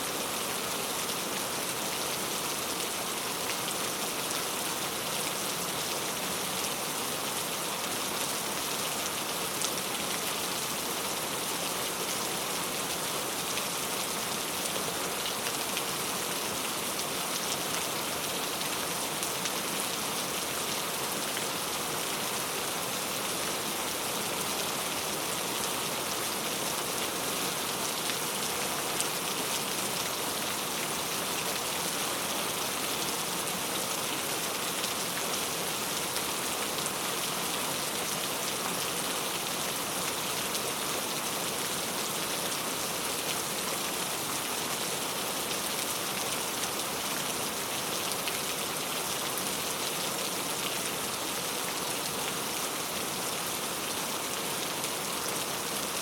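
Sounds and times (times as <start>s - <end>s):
steady rain pattering: 0.0s - 56.0s.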